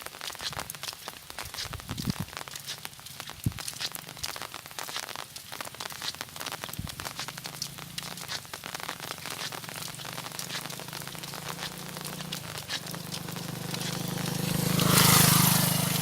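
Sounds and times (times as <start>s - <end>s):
rain pattering: 0.0s - 16.0s
vehicle passing on wet road: 0.0s - 16.0s
low engine hum: 9.6s - 16.0s.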